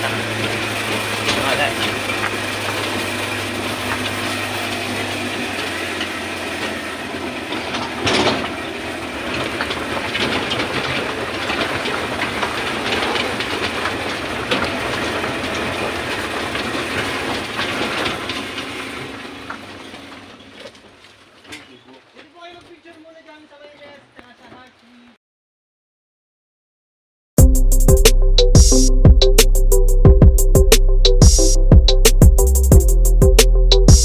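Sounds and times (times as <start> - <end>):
loud clatter: 0.0 - 23.0
train rumbling and rattling: 0.0 - 25.0.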